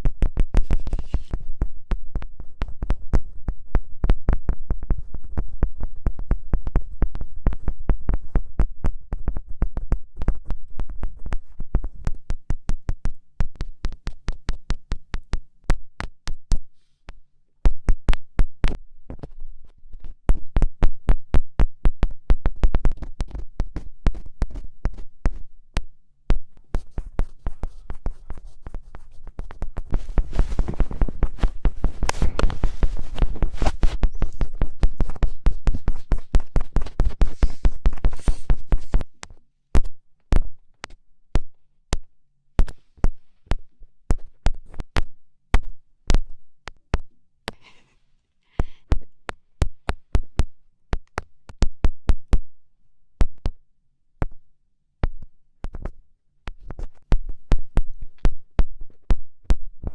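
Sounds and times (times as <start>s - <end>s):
finger taps on microphone: 0.0s - 47.8s, 48.6s - 52.5s, 53.2s - 53.6s, 55.0s - 59.9s
faint rubbing hiss: 0.6s - 1.4s, 26.6s - 39.0s.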